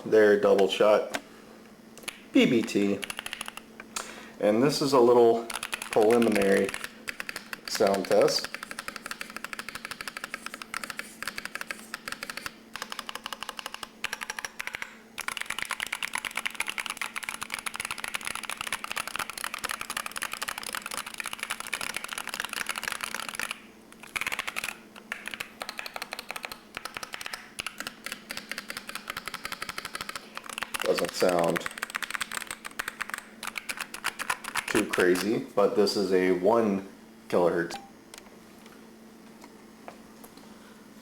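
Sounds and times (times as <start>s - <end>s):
fast keyboard typing: 2.1s - 3.7s, 5.4s - 35.3s.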